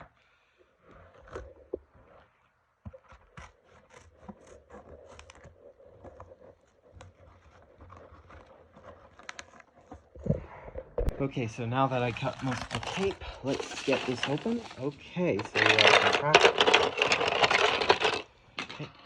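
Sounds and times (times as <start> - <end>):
cutting packing tape on cardboard: 2.9 - 10.0.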